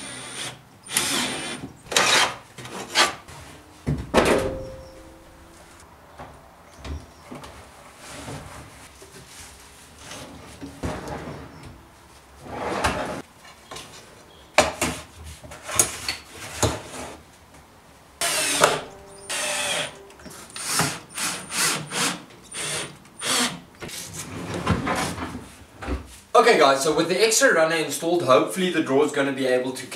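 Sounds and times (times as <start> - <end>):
drill driving screws: 0.0 - 2.4, 18.2 - 19.9, 20.5 - 23.6.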